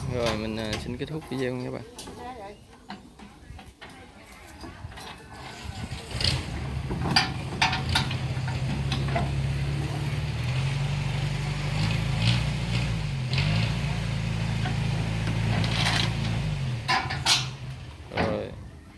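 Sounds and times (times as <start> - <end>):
clanks and knocks: 0.0 - 10.3, 14.5 - 18.6
engine running: 5.6 - 18.2.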